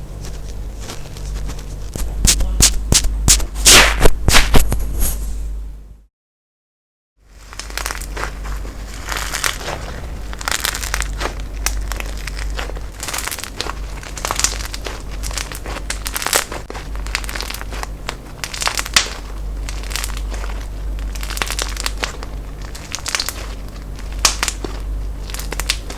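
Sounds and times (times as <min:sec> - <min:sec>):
low steady hum: 0:00.0 - 0:06.1, 0:07.2 - 0:25.9
slime crackling when squeezed: 0:07.4 - 0:25.9.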